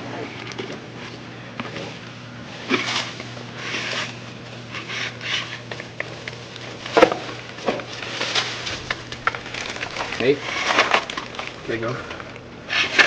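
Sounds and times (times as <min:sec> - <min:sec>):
steady low hum: 0:00.0 - 0:13.0
hand scrapes and rustles: 0:02.6 - 0:06.9, 0:07.9 - 0:13.0.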